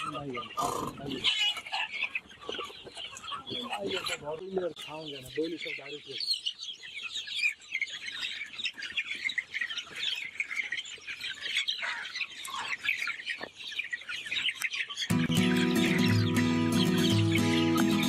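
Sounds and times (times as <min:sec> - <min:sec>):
chickens chirping and squawking: 0:00.0 - 0:18.0
music: 0:15.1 - 0:18.0.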